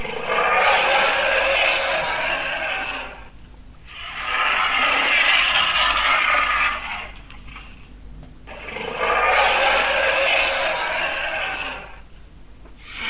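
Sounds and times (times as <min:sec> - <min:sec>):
lizard raspy hisses: 0:12.8 - 0:13.0.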